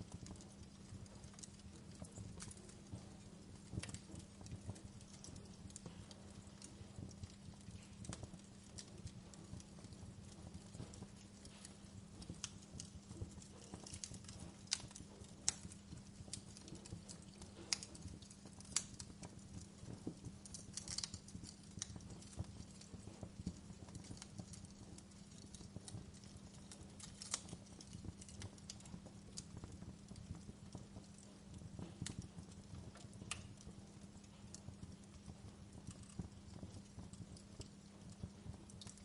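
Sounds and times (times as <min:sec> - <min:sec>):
wood fire crackling: 0:00.0 - 0:39.0.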